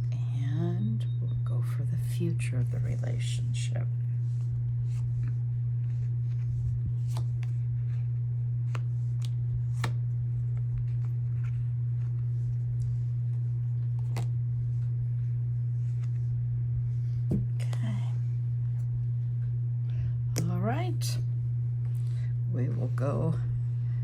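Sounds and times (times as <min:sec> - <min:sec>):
steady low hum: 0:00.0 - 0:24.0
cards being handled: 0:04.2 - 0:15.0, 0:15.8 - 0:16.3
card snaps: 0:08.7 - 0:10.0.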